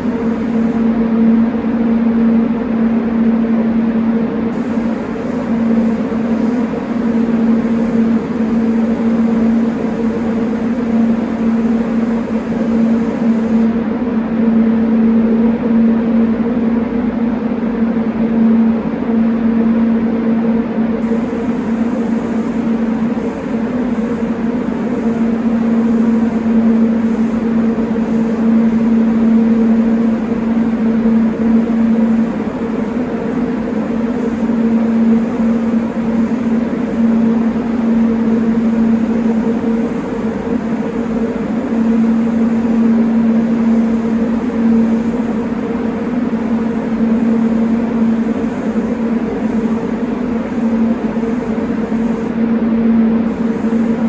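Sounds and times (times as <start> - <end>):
motor hum: 0.0 - 1.3, 4.5 - 13.8
extraction fan humming: 0.0 - 2.4, 4.3 - 14.5, 20.8 - 54.0.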